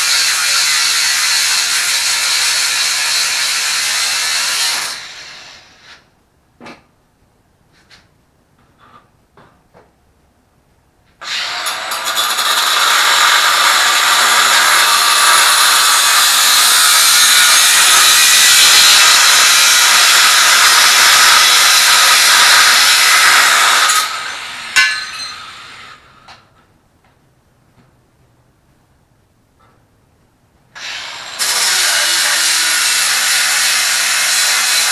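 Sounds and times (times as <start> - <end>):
angle grinder running: 0.0 - 5.5, 11.2 - 25.7, 30.8 - 34.9.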